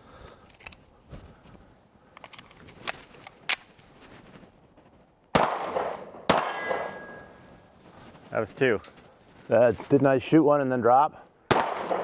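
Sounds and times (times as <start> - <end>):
pistol shot with echo: 5.4 - 7.2, 11.5 - 12.0.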